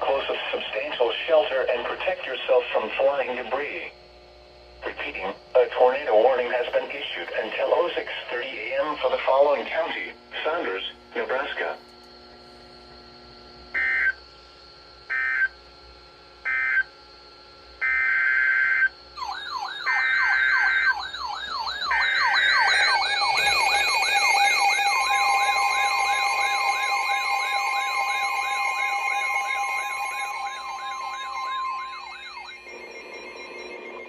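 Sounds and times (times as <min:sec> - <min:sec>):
buzzy digital data bursts: 0:00.0 - 0:11.8, 0:19.2 - 0:34.0
steady attention tones: 0:04.8 - 0:11.8, 0:19.2 - 0:34.0
fast warbling alert tone: 0:27.4 - 0:34.0.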